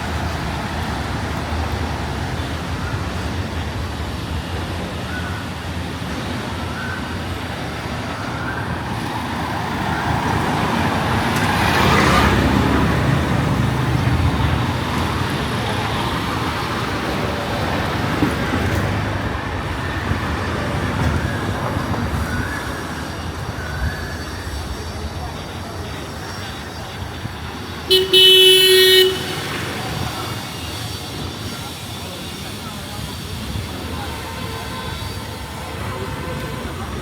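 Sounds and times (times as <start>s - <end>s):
street traffic noise: 0.0s - 37.0s
vehicle passing close: 9.1s - 19.8s.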